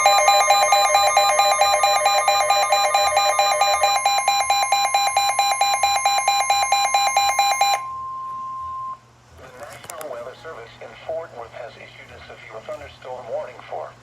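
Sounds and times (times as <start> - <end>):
steady alert tone: 0.0 - 8.0
rapid electronic beeping alarm: 0.0 - 9.0.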